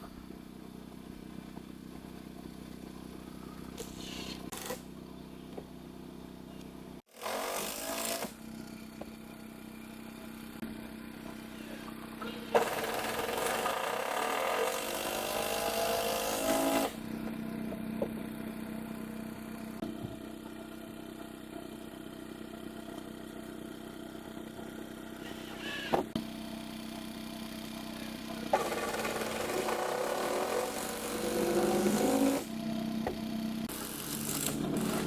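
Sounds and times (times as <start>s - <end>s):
motor humming: 28.2s - 35.0s.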